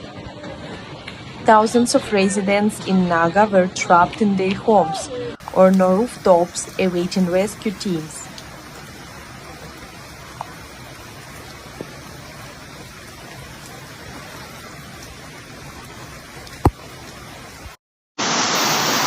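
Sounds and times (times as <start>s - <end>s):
rushing storm water: 5.2s - 19.0s.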